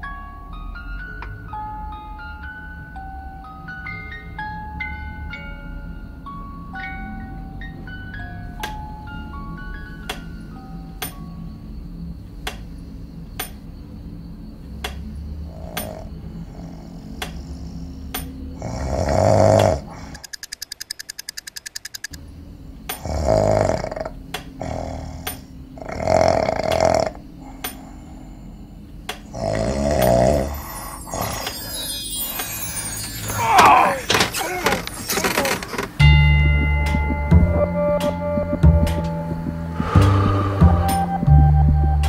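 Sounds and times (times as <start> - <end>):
man snoring loudly: 15.5 - 17.0, 18.6 - 20.2, 23.0 - 28.3, 29.2 - 34.7
steady ticking: 19.6 - 22.2.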